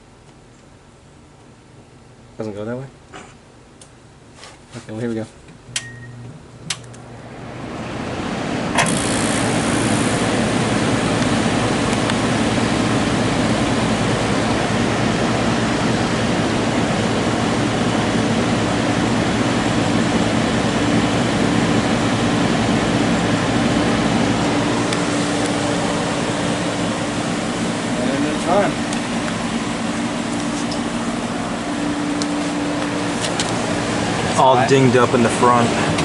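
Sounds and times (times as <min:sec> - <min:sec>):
air conditioner humming: 0:00.0 - 0:36.0
air conditioner switch click: 0:05.7 - 0:07.0.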